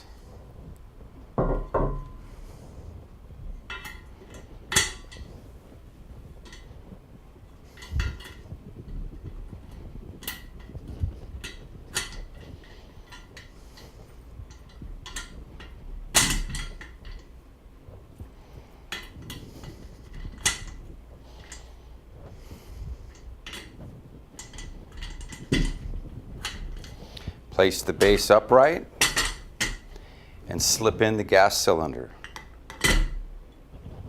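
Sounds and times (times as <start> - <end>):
chair casters clicking into base: 7.6 - 17.3.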